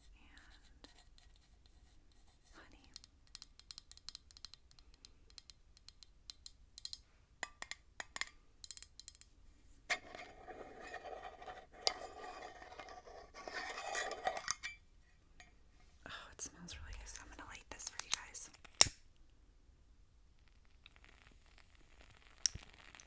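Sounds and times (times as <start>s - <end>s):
scratchy rustling and scraping: 9.6s - 14.7s.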